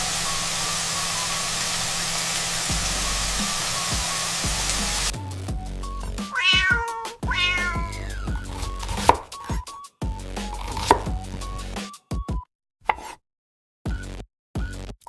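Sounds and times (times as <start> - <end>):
hissing noise: 0.0 - 5.1
background music with low beat: 2.7 - 12.5, 13.9 - 15.0
cat meowing: 6.3 - 8.4.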